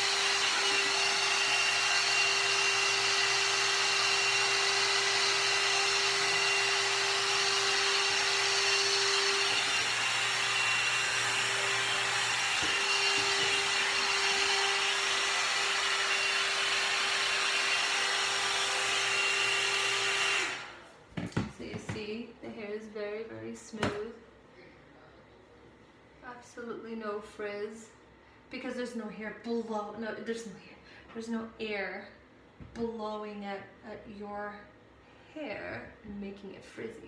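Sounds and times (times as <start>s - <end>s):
hair dryer running: 0.0s - 20.9s.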